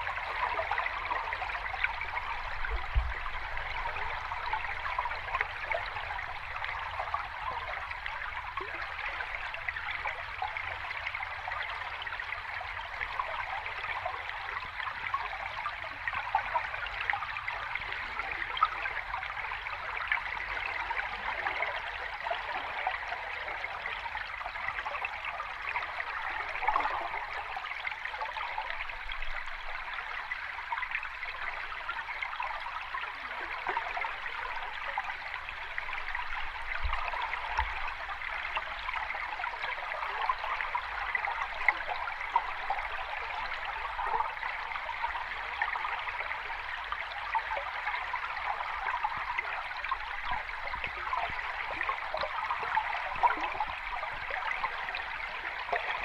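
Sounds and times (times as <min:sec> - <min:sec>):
water running over rocks: 0:24.5 - 0:56.0.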